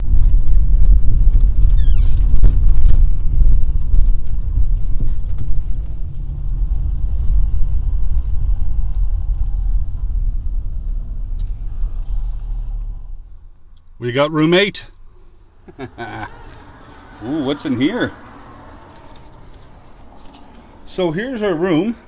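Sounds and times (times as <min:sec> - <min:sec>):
vehicle rumble: 0:00.0 - 0:22.0
short falling squeal: 0:01.7 - 0:02.4.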